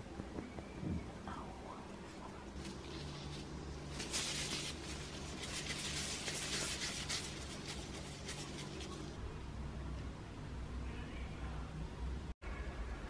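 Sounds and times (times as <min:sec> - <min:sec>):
low steady hum: 0:00.0 - 0:13.0
scraping and rustling: 0:02.4 - 0:09.2.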